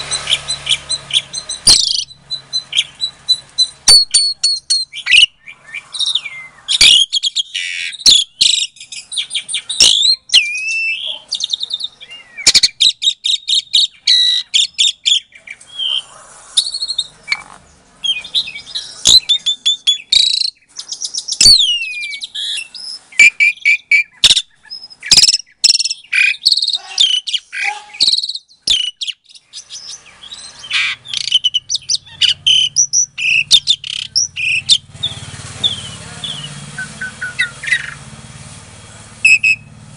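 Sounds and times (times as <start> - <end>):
starling singing: 0.0 - 38.2, 39.2 - 39.8.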